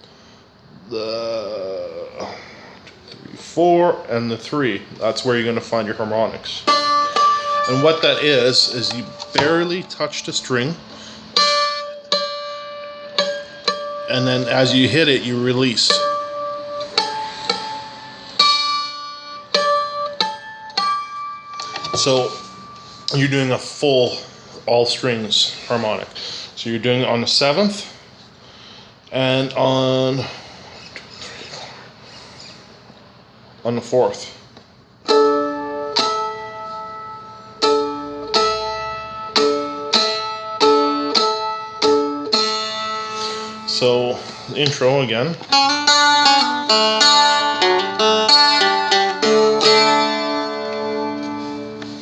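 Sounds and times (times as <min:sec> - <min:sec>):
guitar harmonics strummed: 0:04.4 - 0:26.0, 0:35.0 - 0:52.0.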